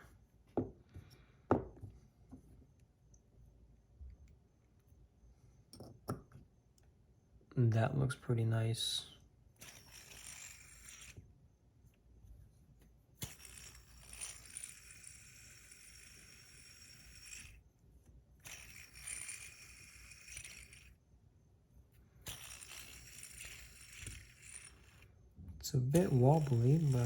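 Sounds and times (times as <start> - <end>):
fidget spinner whirring: 9.5 - 11.3, 13.1 - 17.7, 18.4 - 21.0, 22.1 - 27.0.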